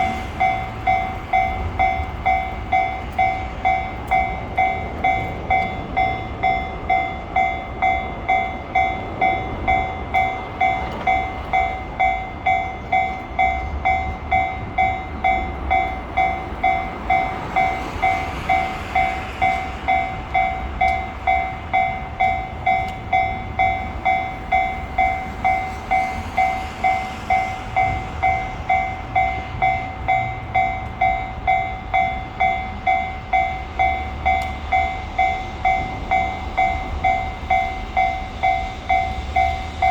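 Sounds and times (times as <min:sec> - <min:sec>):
level-crossing warning bell ringing: 0:00.0 - 0:39.9.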